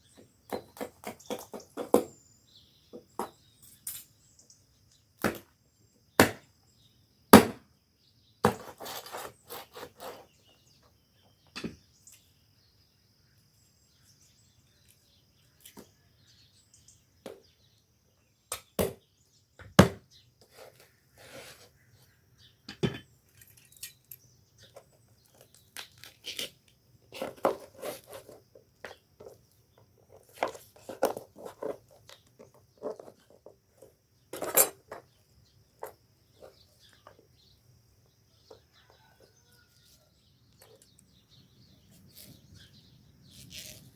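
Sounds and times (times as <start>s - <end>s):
food preparation knocks and clicks: 22.7s - 23.1s.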